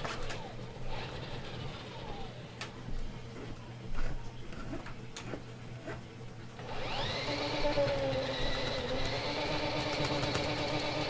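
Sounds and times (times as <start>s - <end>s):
drain cleaning machine motor whine: 0.0s - 2.7s, 6.6s - 11.0s.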